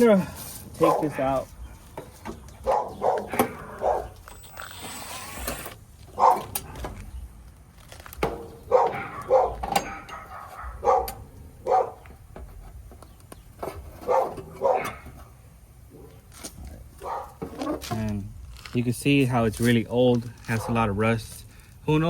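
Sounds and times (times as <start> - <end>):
dog barking: 2.6 - 4.2, 6.2 - 6.5, 8.7 - 12.0, 14.1 - 15.1, 17.0 - 17.4.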